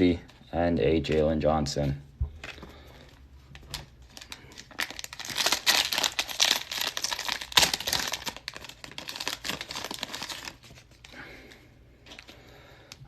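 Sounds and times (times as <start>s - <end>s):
cellophane wrapper crinkling and tearing: 2.4s - 12.4s.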